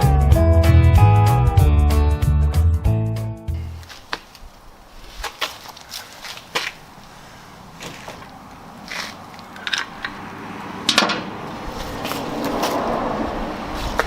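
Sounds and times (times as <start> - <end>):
steady rustling: 3.6 - 10.3, 10.9 - 14.0
sharp clicks and knocks: 10.9 - 11.3.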